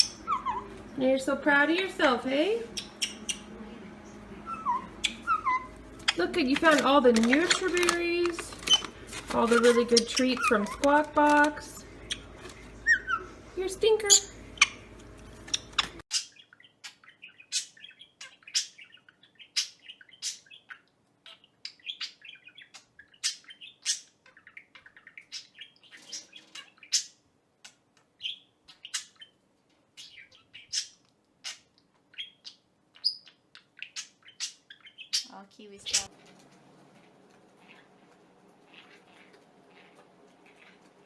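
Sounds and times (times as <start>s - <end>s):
pet bird chirping: 0.0s - 0.8s, 1.7s - 3.6s, 4.4s - 36.1s, 37.3s - 41.0s
soft bird twittering: 2.7s - 3.6s, 4.4s - 6.2s, 30.0s - 36.1s.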